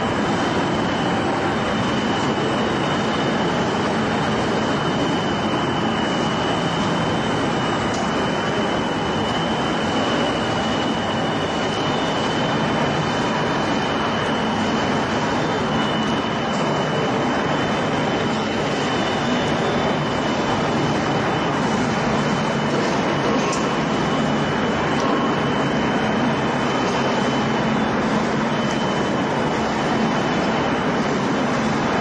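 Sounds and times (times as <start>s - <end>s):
machine noise: 0.0s - 32.0s.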